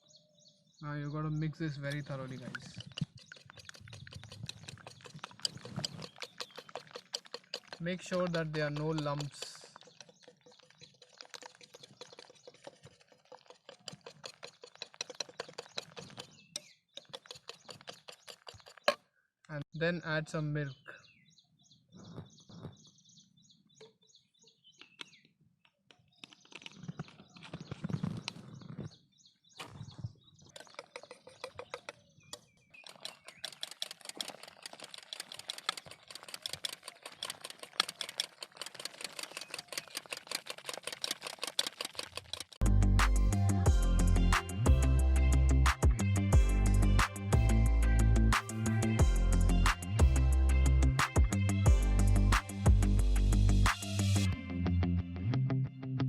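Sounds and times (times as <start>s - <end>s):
utensil clicking against bowl: 1.9s - 19.0s, 30.6s - 42.6s.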